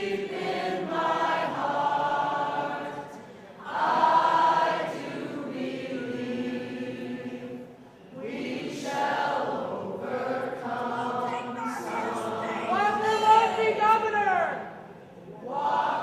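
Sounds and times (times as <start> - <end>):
group singing long notes: 0.0 - 13.5, 15.4 - 16.0.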